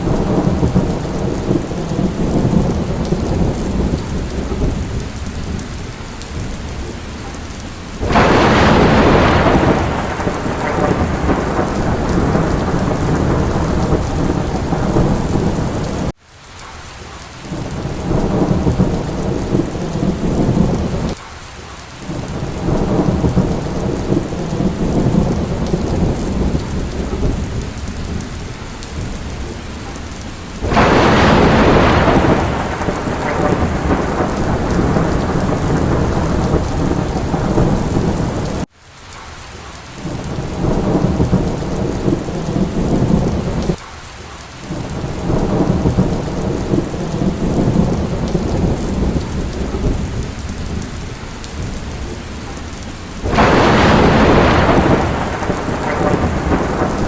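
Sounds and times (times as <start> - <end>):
thunder rolling: 0.0 - 6.9, 8.0 - 16.1, 17.6 - 21.2, 22.1 - 30.0, 30.6 - 38.7, 44.8 - 52.6, 53.2 - 57.0
heavy rain: 0.0 - 57.0.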